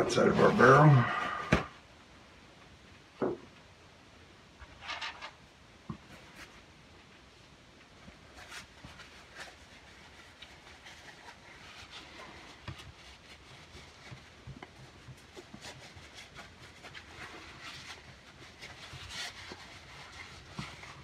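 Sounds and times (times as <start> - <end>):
rubbing and scrubbing metal: 8.4 - 21.0.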